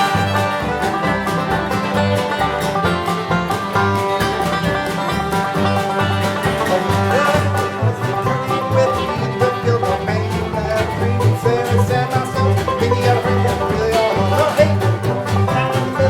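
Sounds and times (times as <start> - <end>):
banjo and guitar picking: 0.0 - 16.0
pulsing bass line: 0.0 - 16.0.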